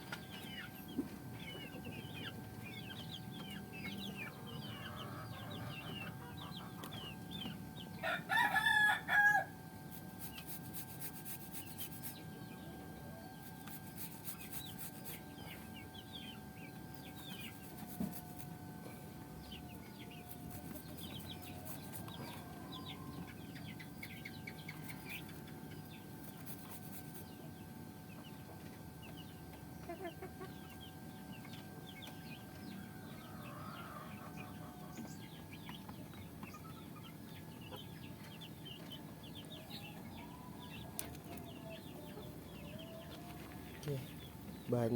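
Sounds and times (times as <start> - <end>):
chickens chirping and clucking: 0.0 - 9.2, 10.0 - 18.6, 19.2 - 44.9
rooster crowing: 8.0 - 9.6, 19.6 - 23.3, 32.8 - 34.9.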